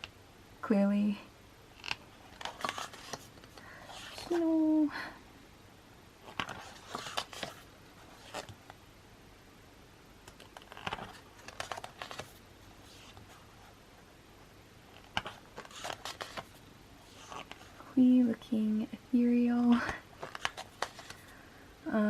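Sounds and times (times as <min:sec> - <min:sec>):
paper pages rustling: 0:01.8 - 0:04.5, 0:06.2 - 0:08.7, 0:10.2 - 0:13.8, 0:14.9 - 0:17.9, 0:19.8 - 0:21.4.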